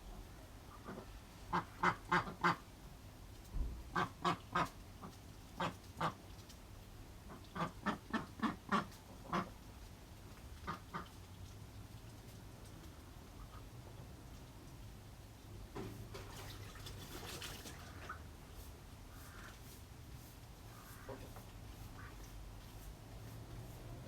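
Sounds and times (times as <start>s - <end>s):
duck quacking: 0.7s - 2.6s, 3.9s - 6.2s, 7.3s - 9.5s.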